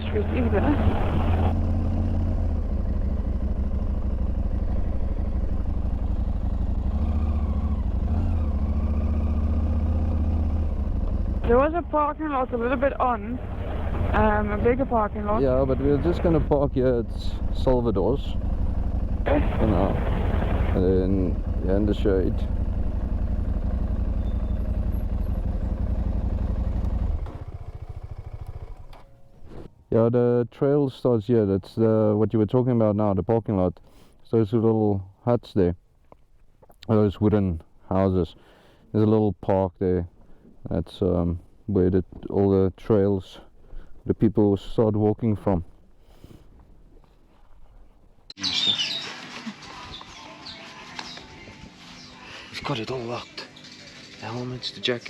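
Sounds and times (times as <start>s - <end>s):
motorcycle engine running: 0.0s - 29.7s, 48.6s - 55.0s.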